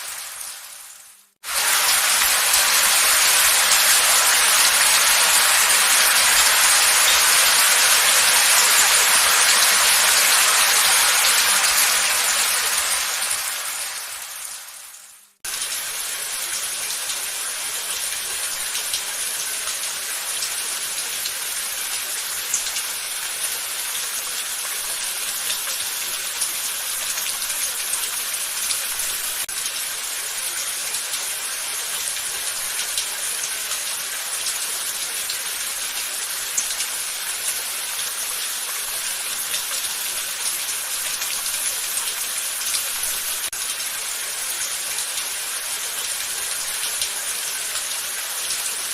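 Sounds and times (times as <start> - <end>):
steady rain hiss: 0.0 - 48.9.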